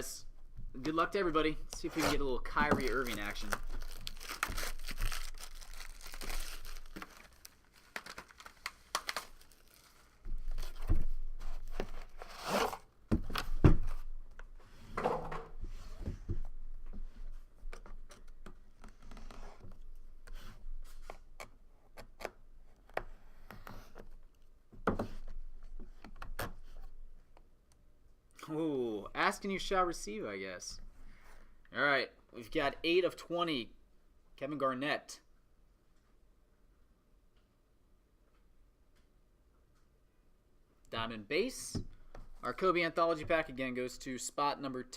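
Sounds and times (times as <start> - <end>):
packaging tearing and crinkling: 2.8 - 10.8.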